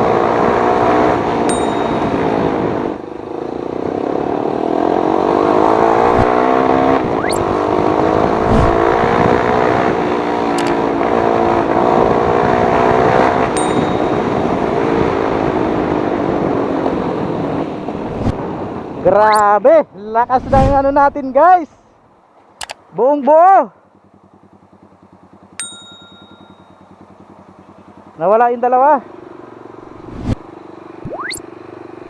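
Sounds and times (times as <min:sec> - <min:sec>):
loud motorcycle exhaust: 0:00.0 - 0:19.0, 0:23.9 - 0:28.2
sharp clicks: 0:10.6 - 0:10.8, 0:22.5 - 0:22.8.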